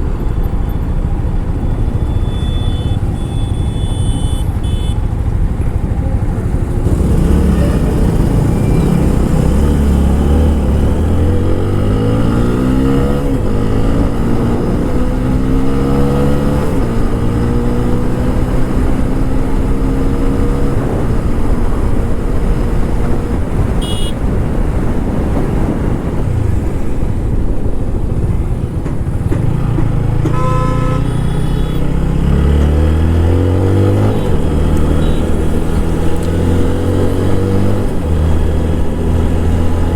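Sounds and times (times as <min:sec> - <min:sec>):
motorcycle engine accelerating: 0:01.0 - 0:39.9
wind rush: 0:20.6 - 0:29.6
horn toot: 0:23.8 - 0:24.2, 0:30.2 - 0:31.9.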